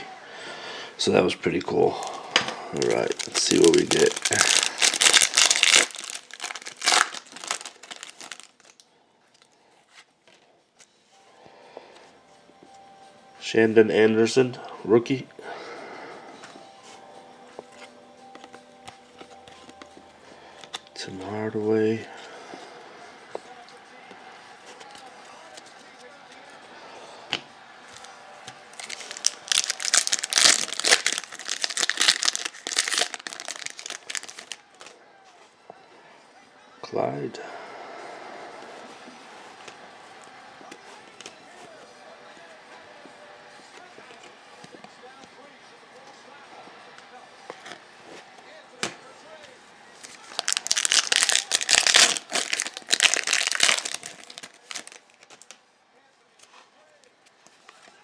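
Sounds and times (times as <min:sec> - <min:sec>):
wrapper tearing and crinkling: 0:01.9 - 0:08.8, 0:28.8 - 0:34.9, 0:50.0 - 0:55.5.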